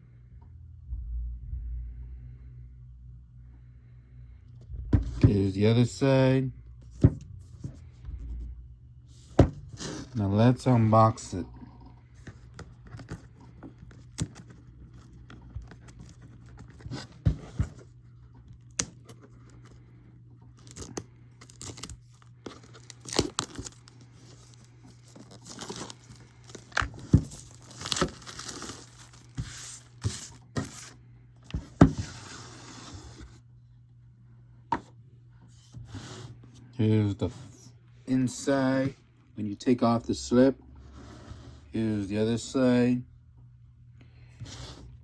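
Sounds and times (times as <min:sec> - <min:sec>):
faint low hum: 0:00.0 - 0:45.0
packaging tearing and crinkling: 0:20.6 - 0:30.8.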